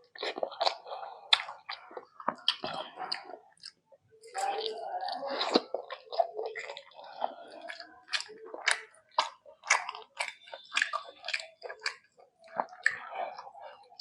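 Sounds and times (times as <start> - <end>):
close chewing: 0.0 - 14.0
wet mouth clicks: 5.6 - 13.4.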